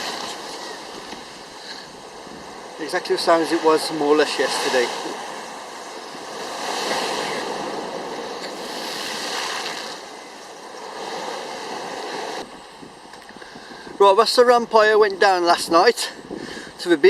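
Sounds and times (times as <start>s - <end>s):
sea waves washing onto shore: 0.0s - 12.4s.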